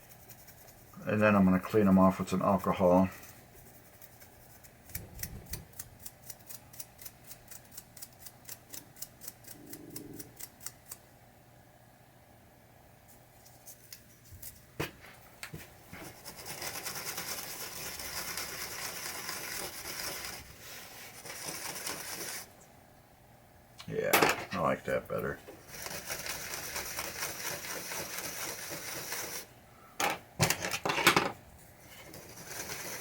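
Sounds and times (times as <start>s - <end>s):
quick light strokes on parts: 0.0s - 11.1s, 13.0s - 22.7s, 25.6s - 29.5s
cloth hissing rub: 19.4s - 22.5s.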